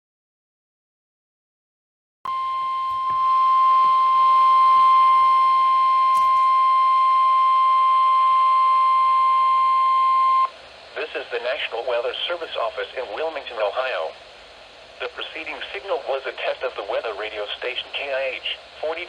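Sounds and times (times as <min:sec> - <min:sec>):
steady high alarm tone: 0:02.3 - 0:10.5.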